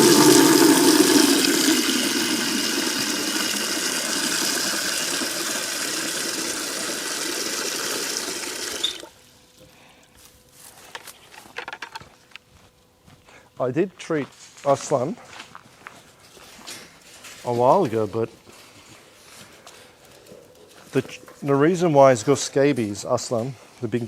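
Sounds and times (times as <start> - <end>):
water running into a container: 0.0 - 9.1.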